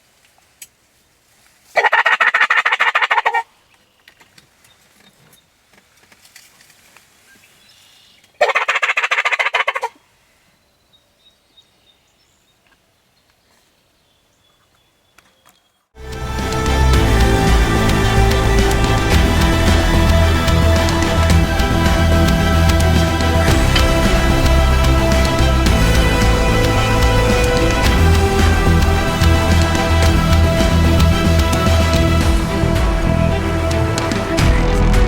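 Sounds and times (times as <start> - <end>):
turkey calling: 1.8 - 3.5, 8.4 - 10.0
music: 16.0 - 35.0.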